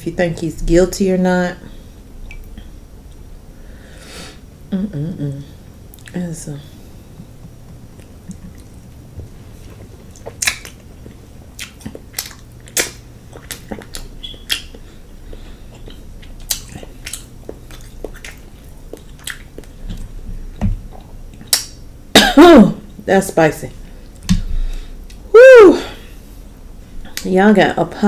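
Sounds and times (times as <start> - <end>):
chewing with wet mouth smacks: 7.2 - 21.8.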